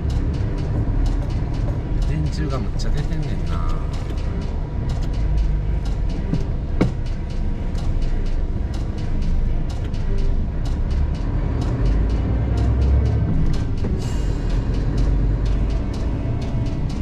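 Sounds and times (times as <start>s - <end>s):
diesel truck engine rumbling: 0.0s - 17.0s.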